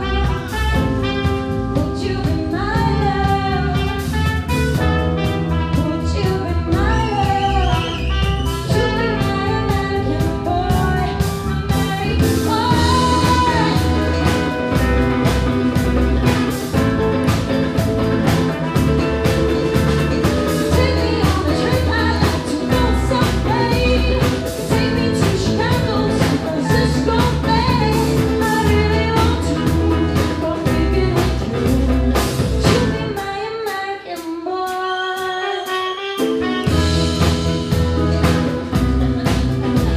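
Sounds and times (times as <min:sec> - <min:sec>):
bass: 0:00.0 - 0:33.9, 0:34.7 - 0:39.9
person singing: 0:05.7 - 0:39.9
drum beat: 0:10.8 - 0:33.0, 0:36.7 - 0:39.9.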